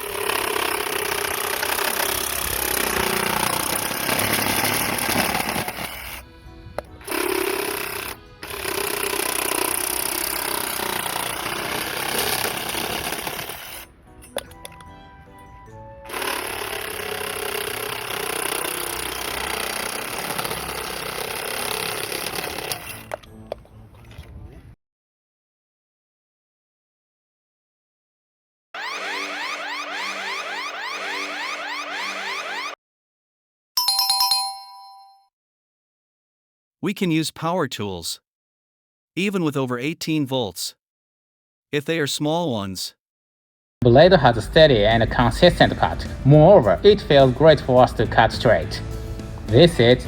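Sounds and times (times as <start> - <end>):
reciprocating saw cutting plastic pipe: 0.0 - 13.9, 16.1 - 23.2.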